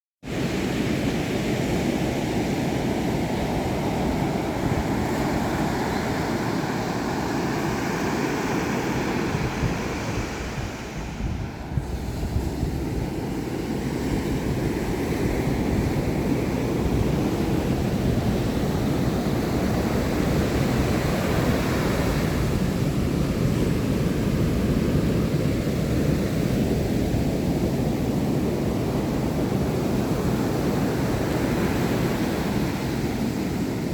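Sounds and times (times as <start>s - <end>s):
ocean surf breaking: 0.3s - 33.9s
wind buffeting microphone: 1.6s - 33.9s.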